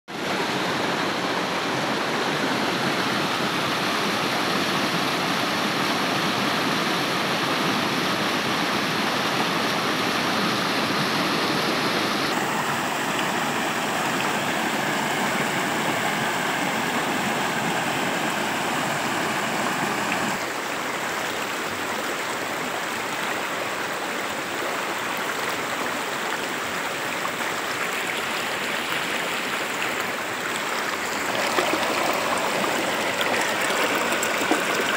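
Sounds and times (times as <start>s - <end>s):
rushing water: 0.1s - 34.9s.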